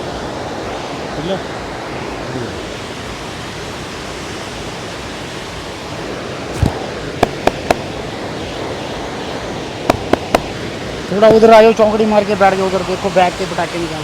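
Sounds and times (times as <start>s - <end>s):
river flowing: 0.0s - 14.0s
sharp clicks from massage: 6.6s - 7.8s.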